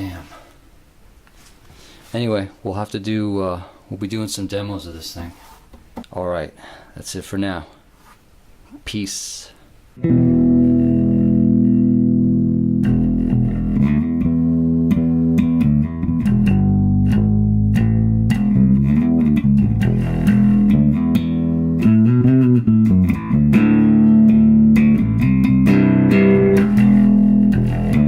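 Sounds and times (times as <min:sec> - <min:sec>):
electric bass guitar playing: 0:10.0 - 0:28.0.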